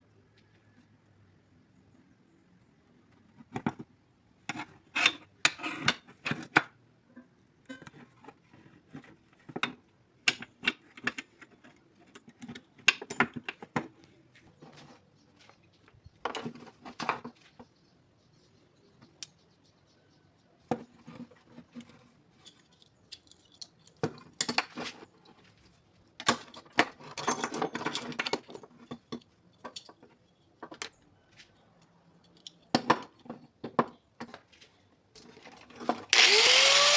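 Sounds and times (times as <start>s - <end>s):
tools clinking: 21.7s - 24.9s, 31.7s - 33.4s.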